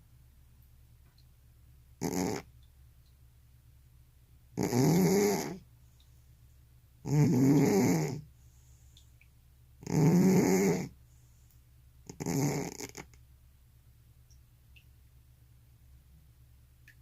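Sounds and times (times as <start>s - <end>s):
cat snoring: 2.0s - 2.5s, 4.6s - 5.6s, 7.0s - 8.3s, 9.8s - 11.0s, 12.1s - 13.2s.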